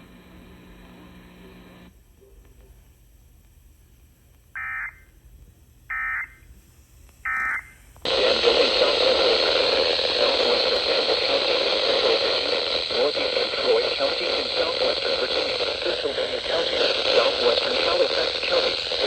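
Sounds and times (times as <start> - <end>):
radio static hiss: 8.0 - 19.0.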